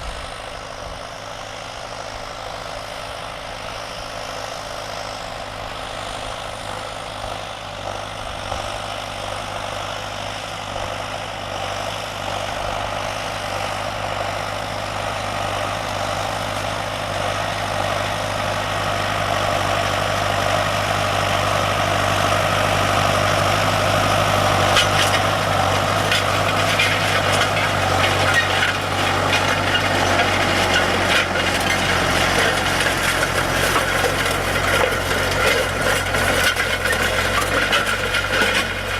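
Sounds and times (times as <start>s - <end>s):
tractor engine running: 0.0s - 38.9s
rapid clattering rattle: 24.7s - 38.9s.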